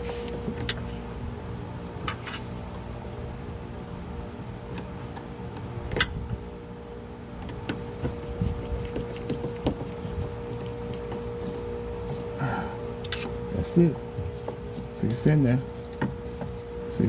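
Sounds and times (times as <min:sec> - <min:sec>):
steady hum: 0:00.0 - 0:17.0.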